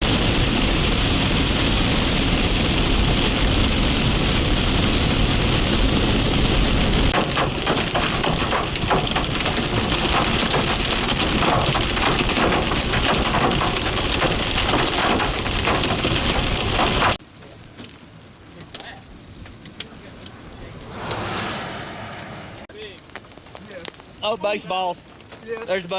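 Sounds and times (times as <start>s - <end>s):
deep wind rumble: 0.0s - 7.2s, 19.1s - 22.7s
sharp hail strikes: 0.0s - 21.4s, 22.7s - 25.9s
heavy rain and hail: 0.0s - 25.9s.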